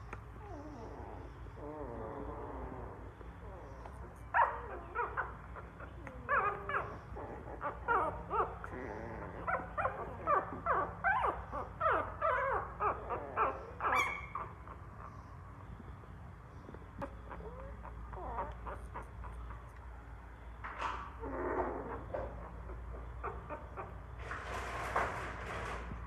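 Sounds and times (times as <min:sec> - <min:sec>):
puppy whimpering: 0:00.3 - 0:15.3, 0:17.0 - 0:19.7, 0:21.2 - 0:24.0.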